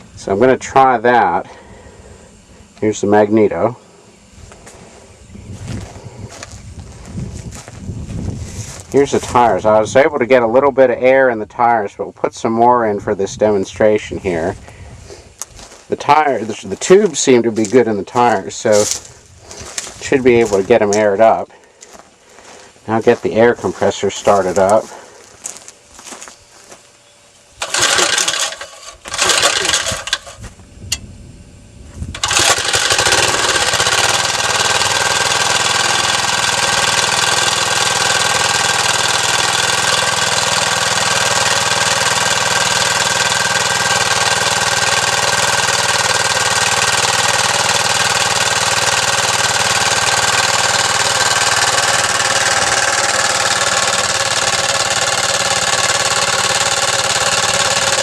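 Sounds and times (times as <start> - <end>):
small gasoline engine starting: 27.6 - 30.5, 32.1 - 58.0.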